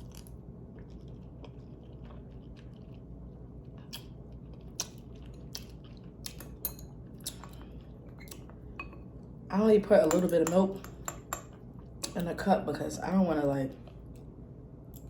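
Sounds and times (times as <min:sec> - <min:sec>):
person chewing noodles: 0:00.0 - 0:08.8
steady low hum: 0:00.0 - 0:15.0.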